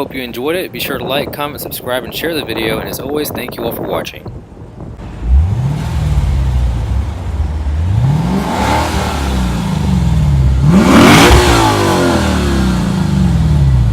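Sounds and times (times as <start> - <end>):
car engine revving: 5.0 - 13.9.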